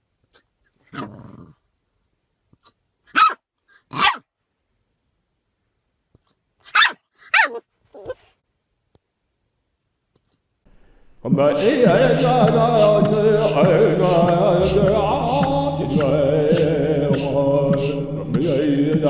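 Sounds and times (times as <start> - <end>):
puppy growling: 1.0 - 1.6
puppy barking: 3.1 - 4.2, 6.7 - 8.2.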